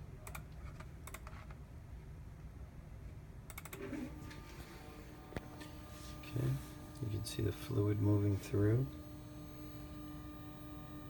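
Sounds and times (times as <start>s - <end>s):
computer keys clicking: 0.2s - 1.3s
steady low hum: 1.6s - 11.0s
stepper motors whining: 3.8s - 11.0s.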